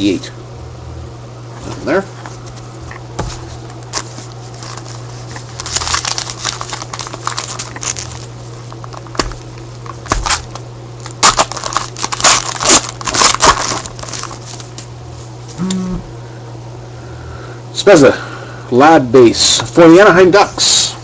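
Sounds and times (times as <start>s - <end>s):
wrapper crinkling and tearing: 3.8s - 14.9s.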